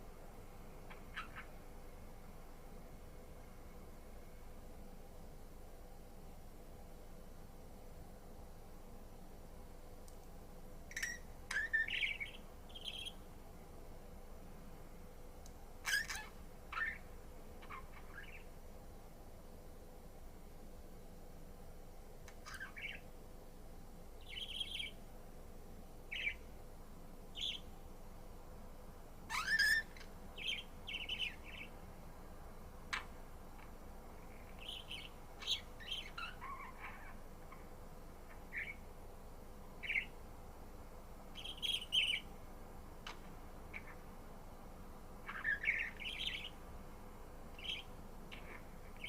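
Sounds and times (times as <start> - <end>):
faint steady hum: 0.0 - 49.0
budgerigar chirping: 0.9 - 1.5, 10.9 - 13.1, 15.9 - 17.0, 22.4 - 23.0, 26.1 - 26.4, 29.3 - 31.7, 34.6 - 37.2, 38.5 - 38.8, 39.8 - 40.1, 45.3 - 46.5.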